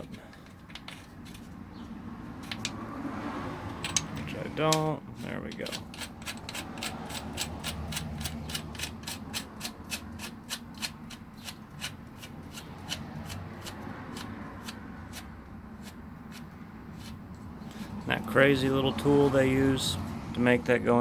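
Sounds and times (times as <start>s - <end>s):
ratchet clicking: 2.4s - 2.8s, 3.8s - 18.0s.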